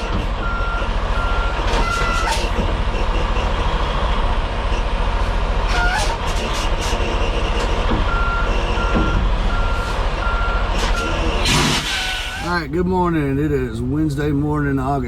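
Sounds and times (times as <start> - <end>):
reversing alarm beeping: 0.0 - 3.9, 7.0 - 11.6
truck engine running: 0.0 - 15.0.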